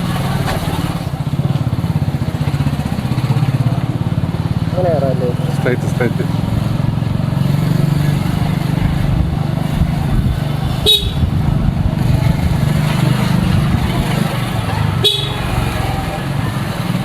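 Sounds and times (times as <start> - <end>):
vehicle engine running: 0.0 - 17.0
horn beep: 10.8 - 11.3, 15.0 - 15.7.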